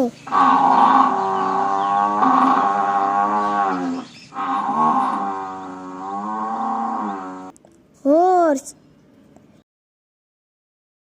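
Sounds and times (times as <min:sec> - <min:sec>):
cow mooing: 0:00.3 - 0:07.6.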